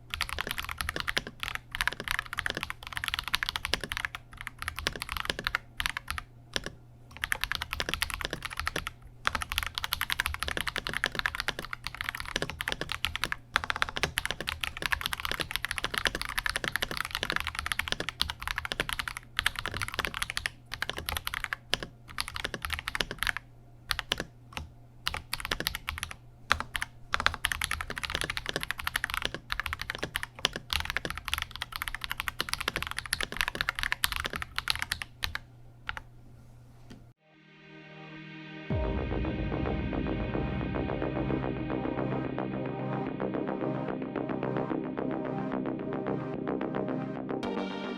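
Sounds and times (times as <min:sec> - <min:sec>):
mechanical keyboard typing: 0:00.1 - 0:36.1.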